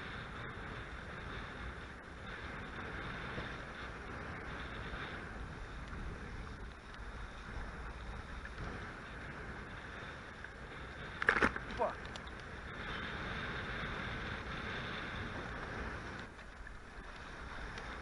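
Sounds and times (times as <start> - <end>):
water rushing around a boat: 0.0 - 18.0.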